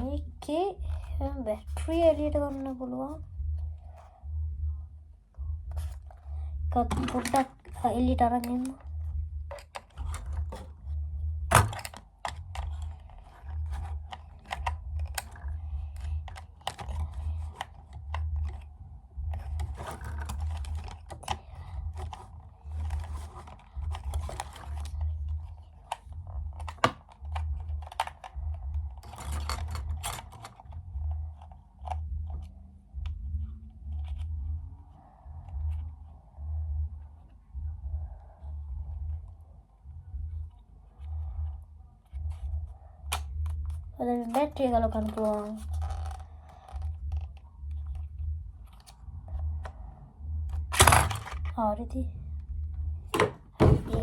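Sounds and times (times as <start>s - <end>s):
low bumps: 32.1s - 54.0s.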